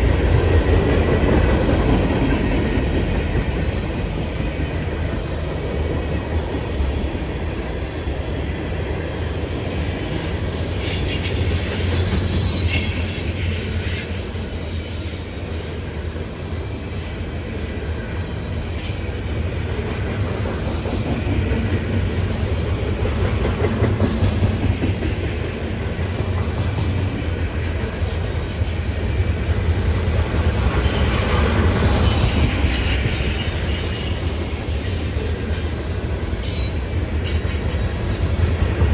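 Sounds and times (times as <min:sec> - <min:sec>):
freight train cars rolling: 0:00.0 - 0:38.9
train wheels squealing: 0:02.4 - 0:19.2, 0:26.0 - 0:38.9.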